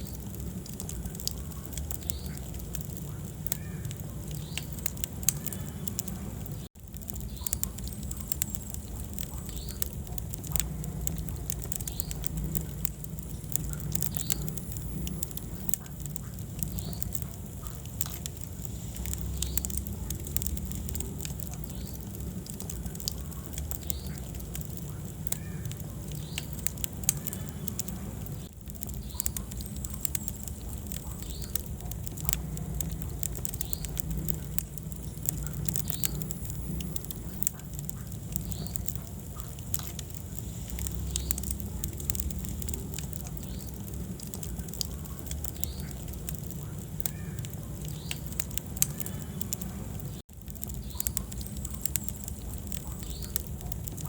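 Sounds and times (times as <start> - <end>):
low rumble of flames: 0.0 - 54.0
wood fire crackling: 0.0 - 54.0.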